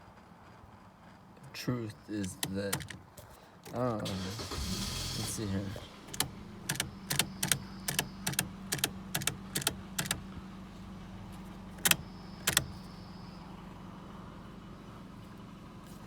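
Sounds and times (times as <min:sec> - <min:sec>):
sharp clicks: 0:02.2 - 0:10.4, 0:11.8 - 0:12.9
steady low hum: 0:04.4 - 0:15.9.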